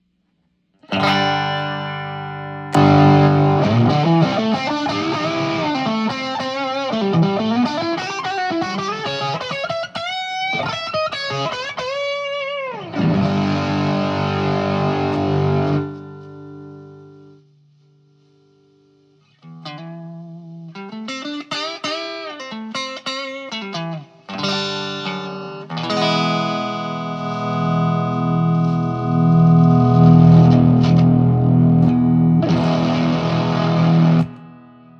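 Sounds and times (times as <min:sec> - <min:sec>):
driven electric guitar: 0:00.8 - 0:34.9.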